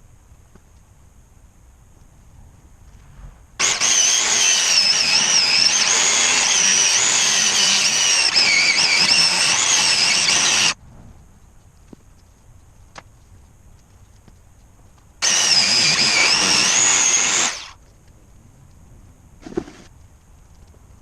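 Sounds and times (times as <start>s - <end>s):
power tool whining: 3.6s - 10.8s, 15.2s - 17.8s.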